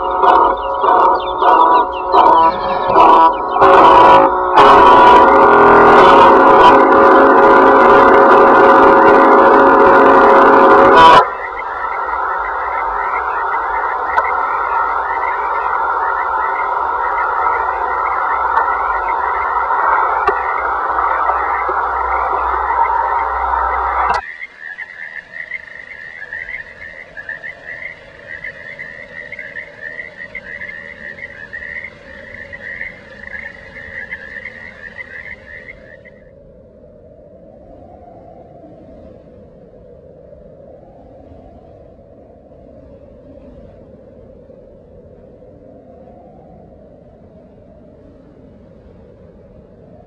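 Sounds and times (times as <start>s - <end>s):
chorus of croaking calls: 0.0s - 36.3s
dense noisy layer: 0.0s - 36.4s.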